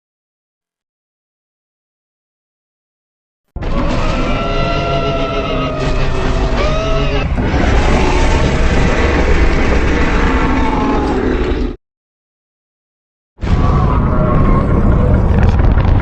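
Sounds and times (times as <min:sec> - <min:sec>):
deep rumbling monster call: 0:03.6 - 0:11.8, 0:13.4 - 0:16.0
moaning monster call: 0:03.6 - 0:11.8.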